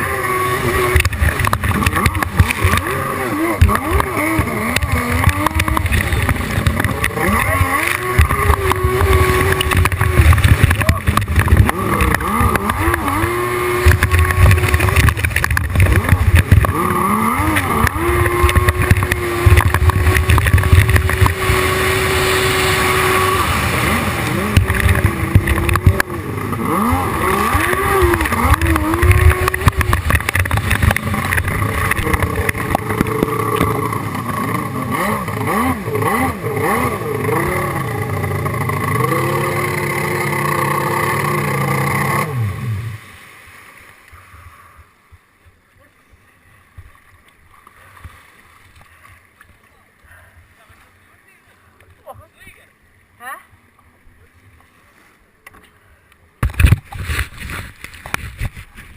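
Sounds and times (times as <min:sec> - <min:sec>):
jet ski engine revving: 0:00.0 - 0:43.6.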